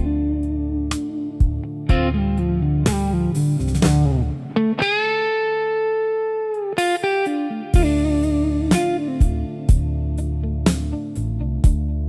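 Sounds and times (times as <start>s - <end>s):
bass line: 0.0s - 4.5s, 7.8s - 12.0s
plucked blues guitar: 0.0s - 12.0s.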